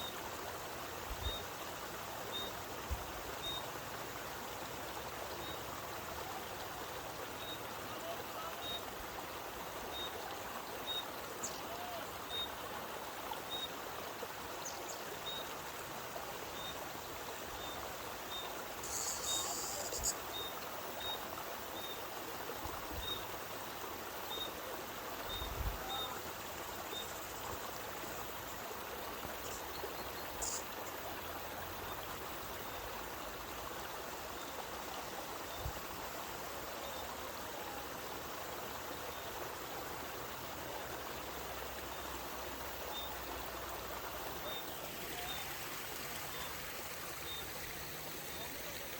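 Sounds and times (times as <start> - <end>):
spring water flowing: 0.0 - 48.9.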